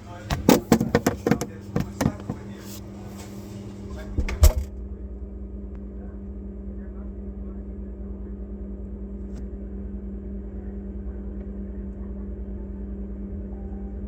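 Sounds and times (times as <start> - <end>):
refrigerator humming: 0.0 - 14.0
refrigerator click: 0.2 - 2.5, 4.2 - 4.7.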